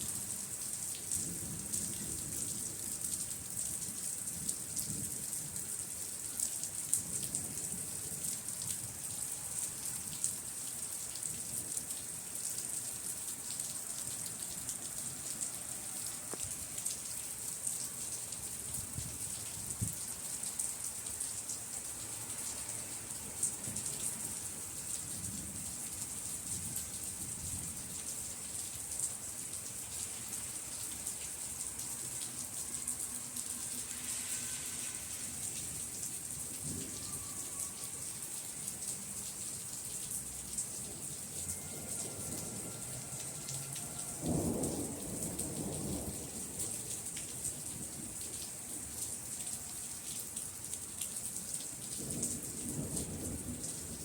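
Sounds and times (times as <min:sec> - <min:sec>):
rain pattering: 0:00.0 - 0:54.0.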